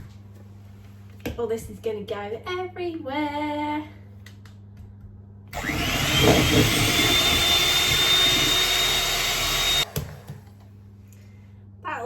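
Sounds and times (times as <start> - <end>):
electric mixer motor whine: 5.5 - 10.4.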